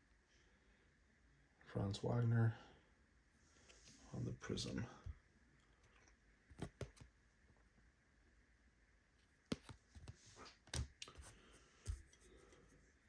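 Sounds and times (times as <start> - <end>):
trading cards clicking together: 6.6 - 7.1.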